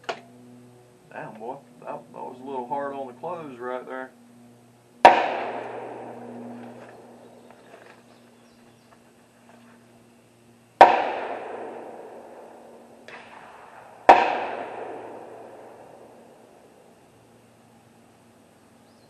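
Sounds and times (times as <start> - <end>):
loud echoing gunshots: 5.0 - 7.4, 10.8 - 16.8
distant gunshot: 5.0 - 7.8, 10.8 - 16.7.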